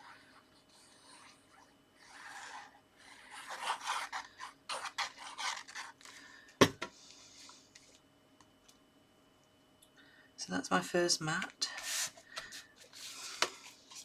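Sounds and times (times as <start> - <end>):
paper rustling and scraping: 2.0 - 6.2.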